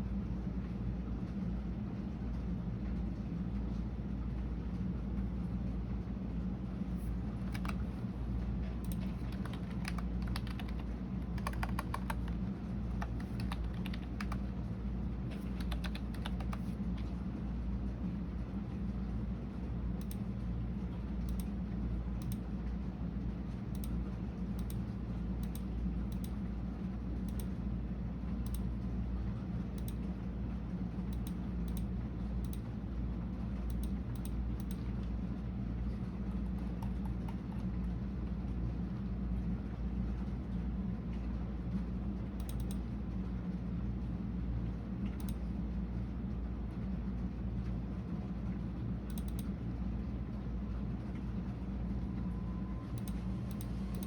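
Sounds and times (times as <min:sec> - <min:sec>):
steady low hum: 0:00.0 - 0:54.0
typing on computer keyboard: 0:07.4 - 0:08.0, 0:08.8 - 0:14.5, 0:15.3 - 0:16.7, 0:36.5 - 0:37.6, 0:49.1 - 0:49.5.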